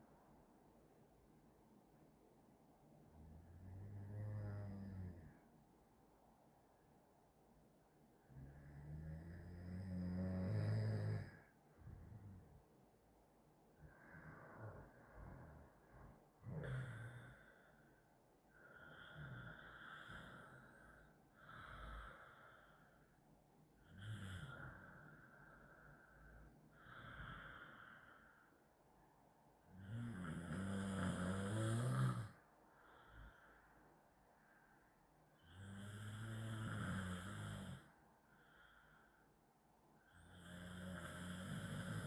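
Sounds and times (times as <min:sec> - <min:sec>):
person snoring: 0:03.2 - 0:05.4, 0:08.3 - 0:12.5, 0:13.8 - 0:17.6, 0:18.7 - 0:22.7, 0:23.8 - 0:25.4, 0:29.7 - 0:32.4, 0:35.4 - 0:37.9, 0:40.1 - 0:42.0
faint breath: 0:11.3 - 0:23.8, 0:24.4 - 0:29.7, 0:32.3 - 0:35.6, 0:37.8 - 0:40.3.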